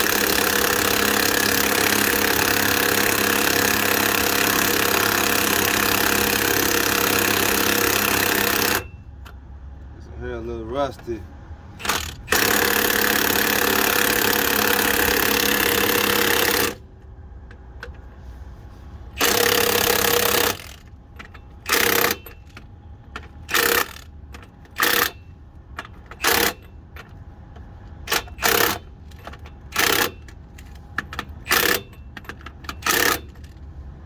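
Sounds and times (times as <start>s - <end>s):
pneumatic impact wrench hammering: 0.0s - 9.0s, 11.8s - 16.8s, 19.2s - 25.2s, 25.8s - 27.2s, 28.0s - 33.6s.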